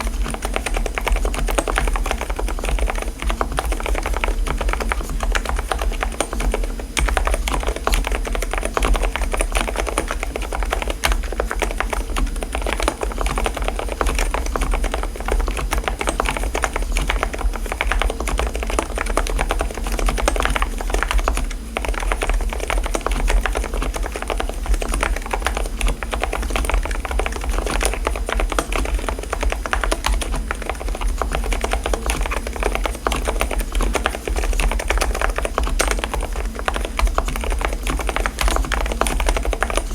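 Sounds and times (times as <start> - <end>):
fast typing on keyboard: 0.0 - 39.9.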